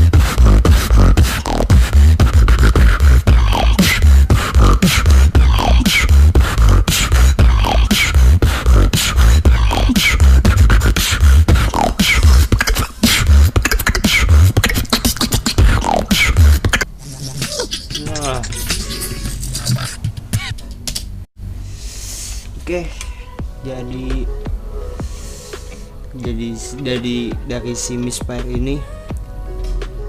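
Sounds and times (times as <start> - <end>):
deep kick drum bass sounds: 0.0 - 13.6, 15.6 - 16.7
woman beatboxing: 0.0 - 20.6.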